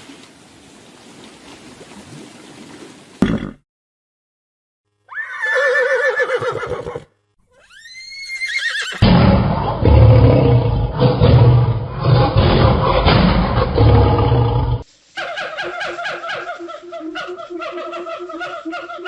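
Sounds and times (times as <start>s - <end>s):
horse whinnying: 5.1s - 9.0s.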